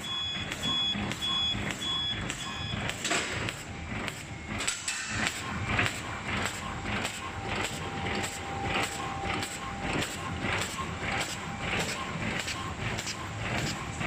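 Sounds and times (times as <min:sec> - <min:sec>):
short high beeps: 0:00.0 - 0:02.9
machine clattering rhythmically: 0:00.0 - 0:14.0.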